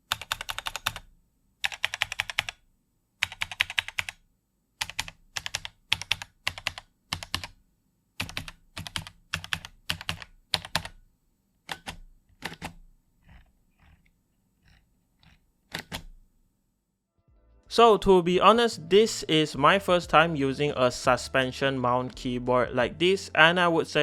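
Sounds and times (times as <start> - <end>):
mechanical keyboard key clicks: 11.7 - 12.8, 15.2 - 16.2.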